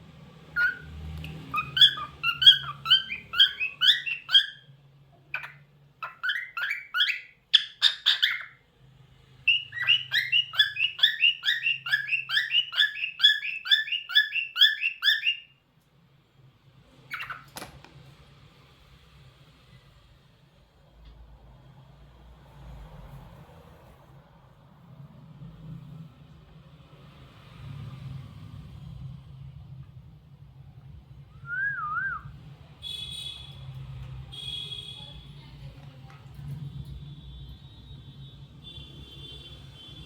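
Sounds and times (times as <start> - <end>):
cockatiel chirping: 0.6 - 4.7, 5.3 - 8.6, 9.5 - 15.5, 17.1 - 17.6.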